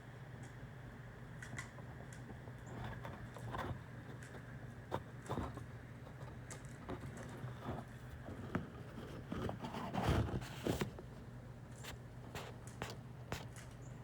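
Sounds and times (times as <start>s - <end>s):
caged bird clicks and rustles: 1.4s - 8.3s.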